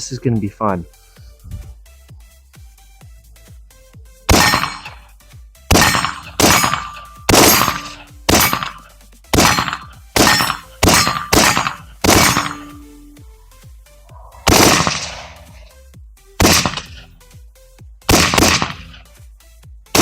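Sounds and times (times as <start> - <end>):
faint electronic music: 0.0 - 20.0
rifle shots with ringing tail: 4.3 - 5.1, 5.7 - 13.0, 14.4 - 15.7, 16.4 - 17.1, 18.1 - 19.1.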